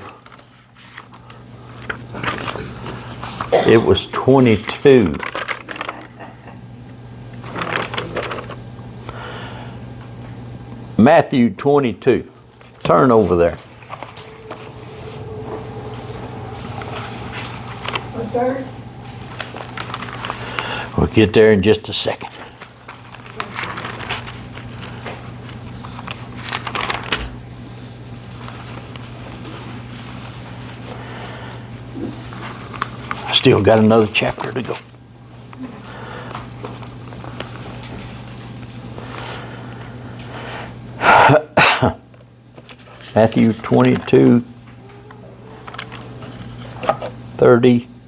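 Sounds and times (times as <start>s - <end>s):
low electrical hum: 0.0s - 48.0s
thin pages turning: 0.2s - 3.5s, 4.6s - 6.3s, 7.4s - 8.6s, 13.5s - 18.3s, 19.0s - 20.9s, 22.2s - 27.4s.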